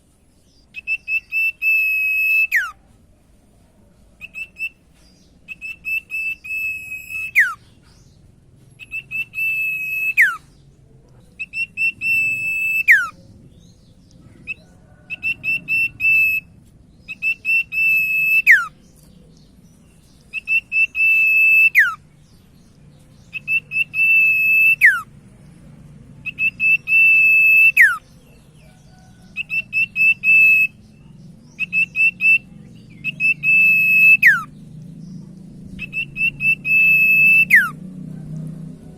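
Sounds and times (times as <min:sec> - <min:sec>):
bird singing whistled phrases: 0:00.7 - 0:02.8, 0:04.2 - 0:04.8, 0:05.4 - 0:07.7, 0:08.8 - 0:10.6, 0:11.4 - 0:13.2, 0:14.4 - 0:18.9, 0:20.1 - 0:22.4, 0:23.2 - 0:25.1, 0:26.2 - 0:28.1, 0:28.9 - 0:34.6, 0:35.8 - 0:37.8.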